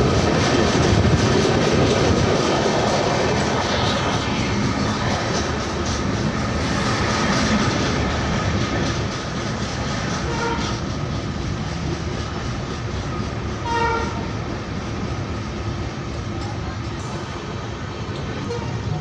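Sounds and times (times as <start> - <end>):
train wheels rumbling on track: 0.0 - 19.0
train horn blast: 10.2 - 10.8, 13.6 - 14.3, 18.4 - 18.8.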